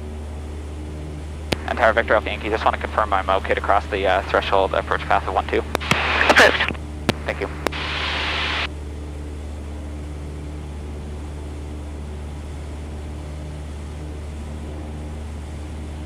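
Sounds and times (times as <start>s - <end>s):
piston engine droning: 0.0s - 16.0s
radio hiss: 1.6s - 8.7s.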